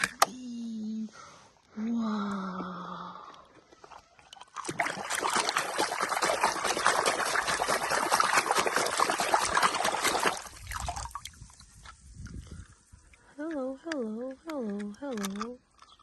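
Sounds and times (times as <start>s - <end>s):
water running and splashing: 4.4s - 12.4s.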